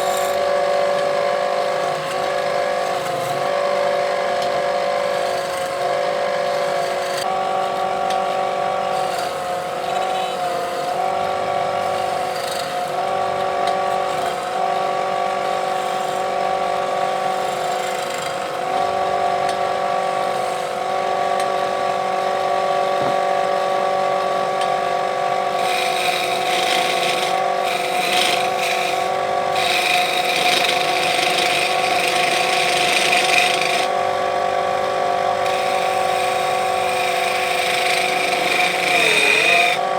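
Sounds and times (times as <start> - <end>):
turning tool cutting wood: 0.0 - 39.9
wood lathe motor humming: 0.0 - 39.9.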